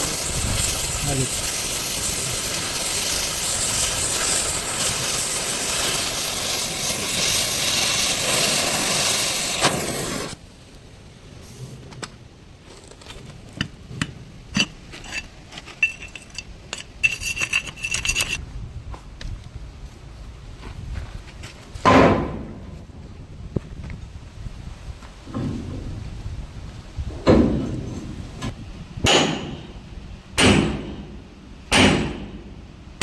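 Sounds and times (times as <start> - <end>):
metal scraping: 0.0 - 10.4, 12.7 - 18.4
welding arc crackling and hissing: 0.0 - 10.4.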